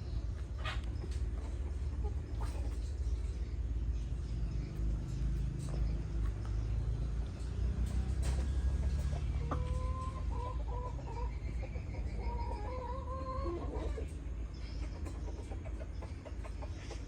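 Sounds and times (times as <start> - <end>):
steady low rumble: 0.0 - 13.2
chickens clucking: 0.0 - 17.0.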